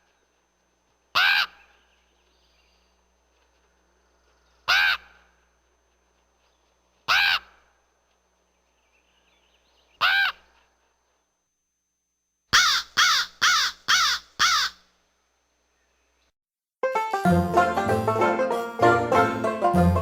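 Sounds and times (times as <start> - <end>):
raven croaking: 12.6 - 14.8.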